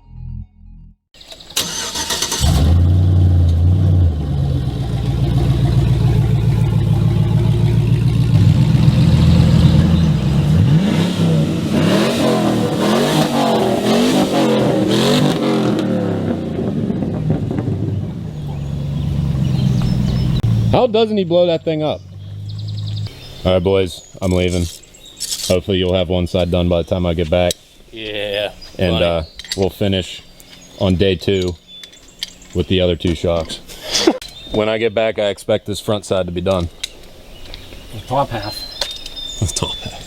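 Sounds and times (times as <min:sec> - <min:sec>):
vehicle engine starting and idling: 0:01.3 - 0:21.0
engine revving hard: 0:01.6 - 0:20.8.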